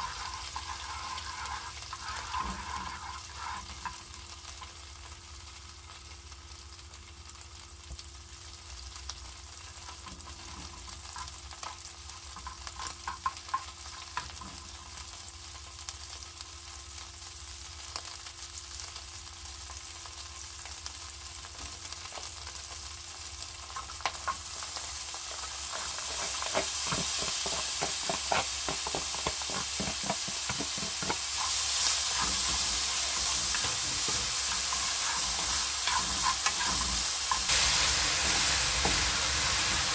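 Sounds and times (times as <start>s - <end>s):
spatula scraping and tapping pan: 0.0s - 4.8s, 9.8s - 14.8s, 23.7s - 39.9s
food sizzling in a frying pan: 0.0s - 39.9s.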